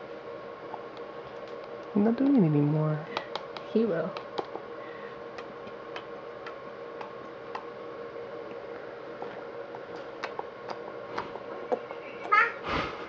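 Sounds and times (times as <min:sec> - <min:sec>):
baby smacking lips: 0:05.4 - 0:07.7, 0:09.2 - 0:12.4.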